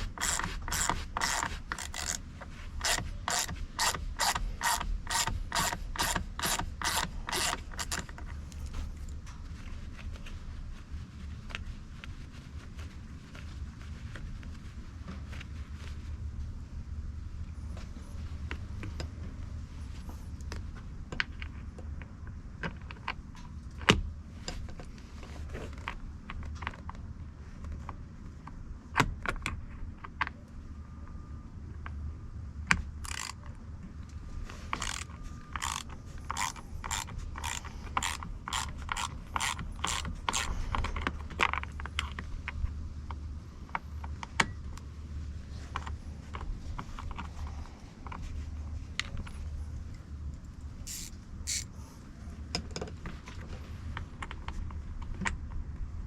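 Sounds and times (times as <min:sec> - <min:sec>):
ratcheting driver clicking: 0:00.0 - 0:02.2, 0:02.8 - 0:08.9, 0:33.0 - 0:33.5, 0:34.8 - 0:40.8, 0:50.9 - 0:51.7.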